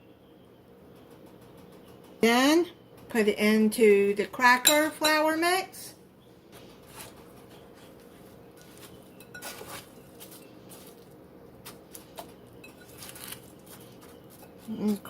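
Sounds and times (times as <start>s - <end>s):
faint steady hum: 0.0s - 15.0s
rustling: 6.5s - 15.0s
meat crunching in coating: 6.8s - 15.0s.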